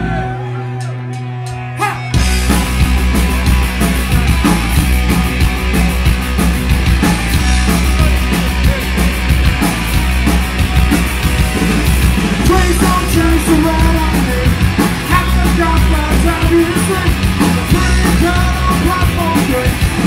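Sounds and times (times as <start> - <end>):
punk rock band playing: 0.0 - 20.0.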